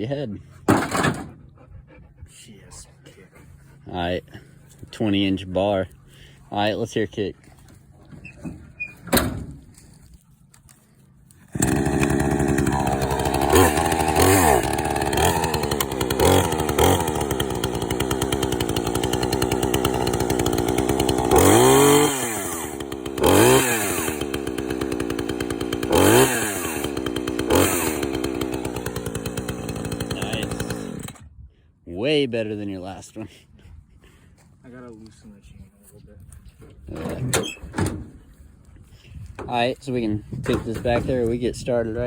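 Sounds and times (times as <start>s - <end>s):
chainsaw revving and idling: 11.3s - 31.3s.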